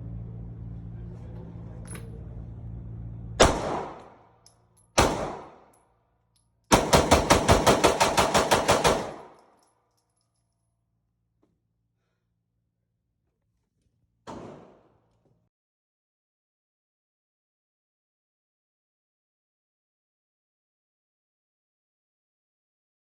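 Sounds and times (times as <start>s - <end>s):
pistol shots: 3.4s - 4.2s, 5.0s - 5.7s, 6.7s - 9.4s, 14.3s - 14.9s.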